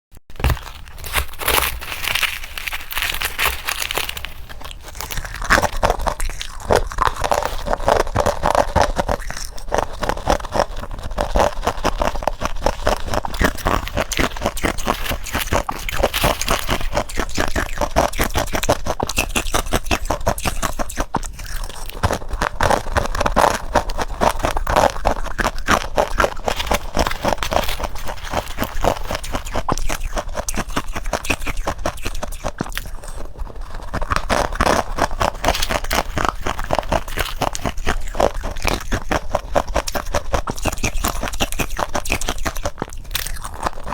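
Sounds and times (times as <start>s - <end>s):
frost being chewed crunching: 0.2s - 43.9s.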